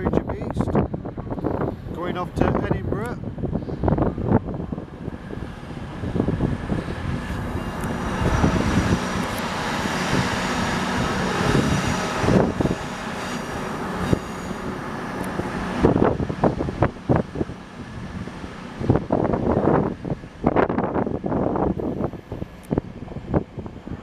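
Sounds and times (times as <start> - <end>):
diesel train engines: 0.0 - 24.0
wind buffeting microphone: 0.0 - 24.0
train wheels on rails: 6.5 - 20.8.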